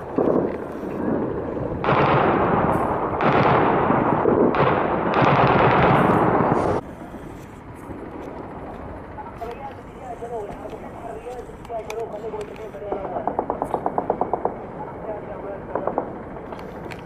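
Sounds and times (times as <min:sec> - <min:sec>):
automatic gunfire: 0:01.8 - 0:06.6.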